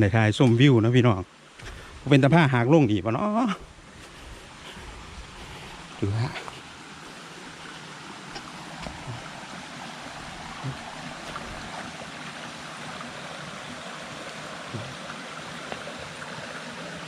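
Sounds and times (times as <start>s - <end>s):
waterfall rushing water: 1.3s - 17.0s.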